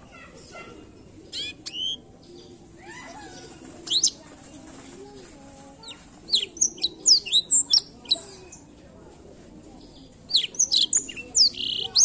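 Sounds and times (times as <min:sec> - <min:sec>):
canary singing chirps and whistles: 0:01.3 - 0:02.0, 0:06.3 - 0:08.6, 0:10.3 - 0:12.0.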